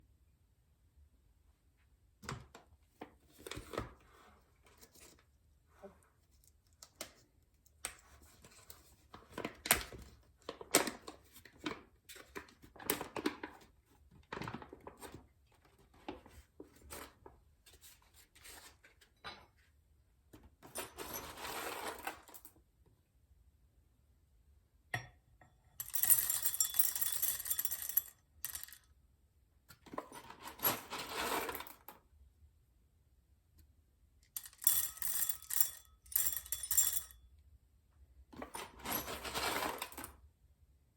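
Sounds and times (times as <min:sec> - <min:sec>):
coffee grinder grinding beans: 0:30.5 - 0:31.8.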